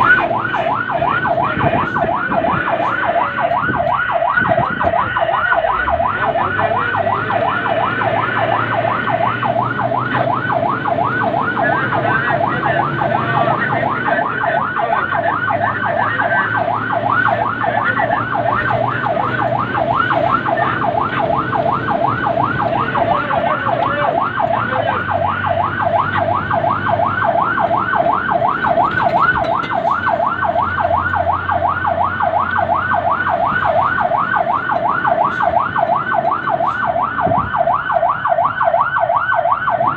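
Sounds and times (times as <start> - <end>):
fire truck siren yelping: 0.0 - 39.9
truck engine running: 0.0 - 39.9.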